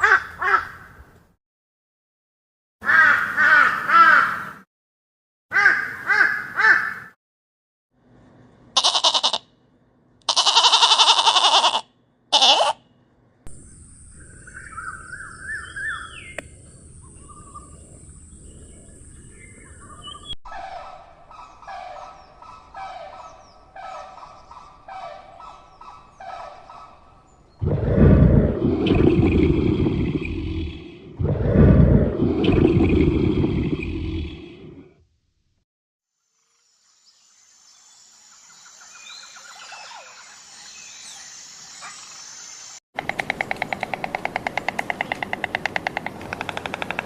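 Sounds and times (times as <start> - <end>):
animal calls: 8.8 - 9.4, 10.3 - 12.8
short animal calls: 8.8 - 9.5, 10.3 - 12.8
birdsong: 12.9 - 27.8, 38.4 - 47.0.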